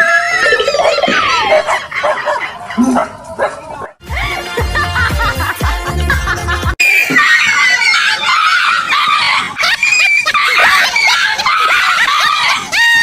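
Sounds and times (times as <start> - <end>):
high-pitched screaming and squealing: 0.0 - 1.8, 6.8 - 13.0.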